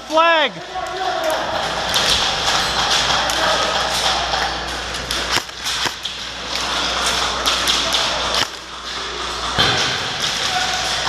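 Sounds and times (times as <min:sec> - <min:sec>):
steady background noise: 0:00.0 - 0:11.0
airsoft gun shots: 0:05.3 - 0:06.0, 0:08.4 - 0:08.6.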